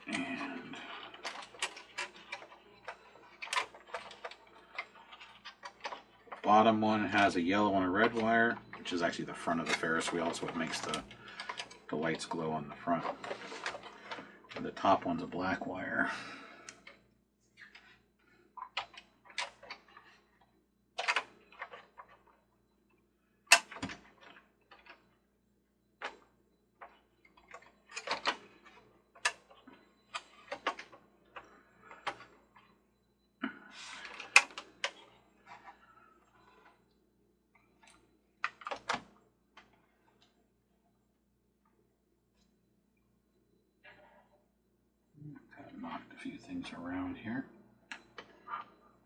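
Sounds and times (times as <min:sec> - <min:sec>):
plastic and metal parts clicking: 0:00.0 - 0:07.3, 0:08.0 - 0:15.1, 0:18.6 - 0:20.2, 0:21.0 - 0:22.4, 0:23.5 - 0:25.1, 0:26.8 - 0:32.7, 0:33.8 - 0:35.8, 0:37.8 - 0:40.3.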